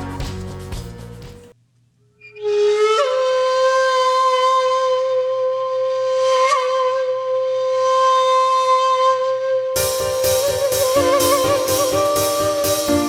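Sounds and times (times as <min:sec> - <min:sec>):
long held musical note: 0:09.8 - 0:13.0.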